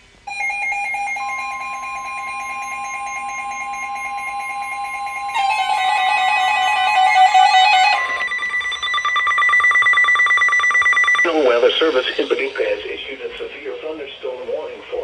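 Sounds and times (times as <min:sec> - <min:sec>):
electronic alert tones: 0:00.3 - 0:12.2
fast pulsing beep: 0:00.6 - 0:05.6, 0:06.6 - 0:12.5.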